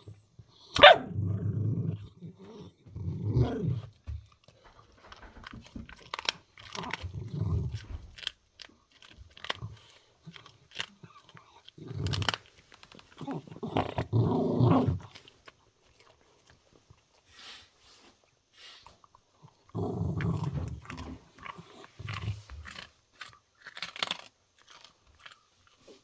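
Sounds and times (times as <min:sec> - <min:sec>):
dog growling: 0:00.7 - 0:04.0, 0:06.6 - 0:08.3, 0:09.5 - 0:15.3, 0:19.4 - 0:22.9
dog chewing bones: 0:04.0 - 0:17.2, 0:19.3 - 0:26.0.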